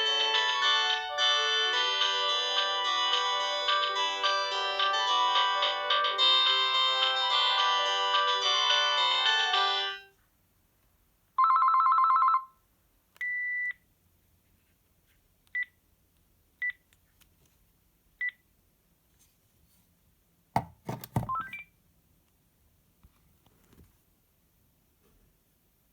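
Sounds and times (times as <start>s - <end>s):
melody ringtone: 0.0s - 10.1s
phone key beeps: 21.2s - 21.7s.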